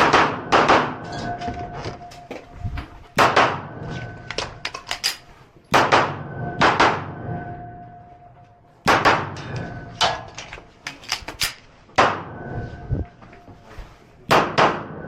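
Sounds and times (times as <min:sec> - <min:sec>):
pistol shots echoing: 0:00.0 - 0:01.0, 0:03.2 - 0:03.8, 0:05.7 - 0:07.1, 0:08.8 - 0:09.4.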